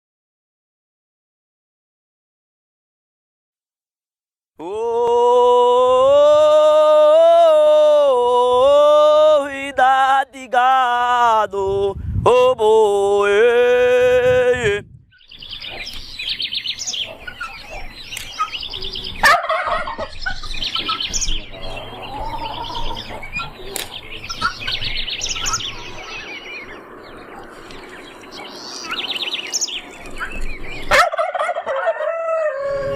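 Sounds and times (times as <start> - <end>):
birds chirping: 13.1 - 31.4
wordless sung cattle call: 16.8 - 27.6.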